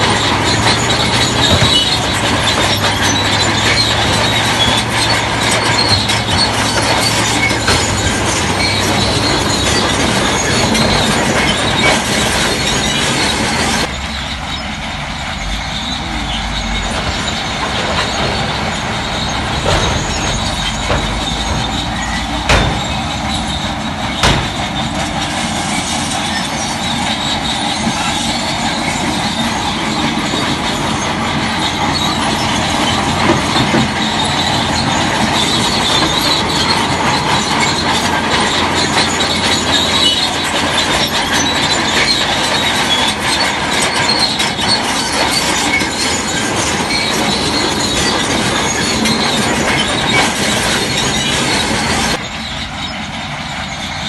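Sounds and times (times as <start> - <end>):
diesel engine running: 0.0 - 54.0
steel tracks clanking and squealing: 0.0 - 54.0
sharp knocks: 19.4 - 25.4.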